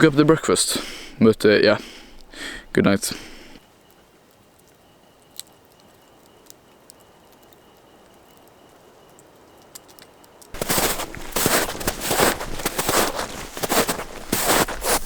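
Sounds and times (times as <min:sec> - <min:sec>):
footsteps in snow: 0:10.5 - 0:15.0.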